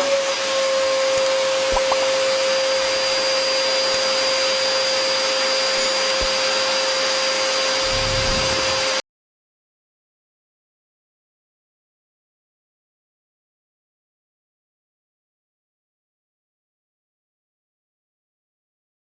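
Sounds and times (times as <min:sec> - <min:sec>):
electric motor whirring: 0:07.7 - 0:09.0.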